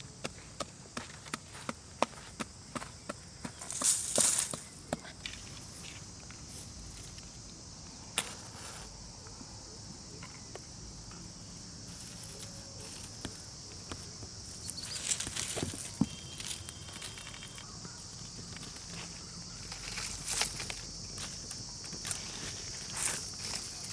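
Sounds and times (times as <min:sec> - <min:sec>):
high-pitched insect drone: 0:01.0 - 0:23.9
rustling and crackling: 0:03.5 - 0:07.5, 0:11.8 - 0:23.9.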